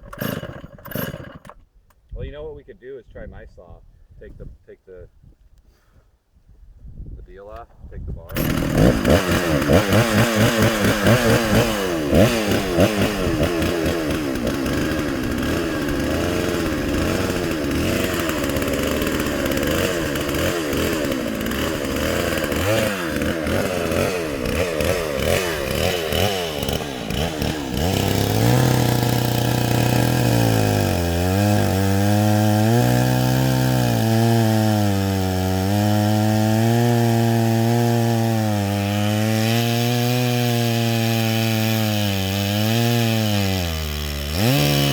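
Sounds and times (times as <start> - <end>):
chainsaw running unevenly: 0.0 - 1.7, 8.2 - 44.9.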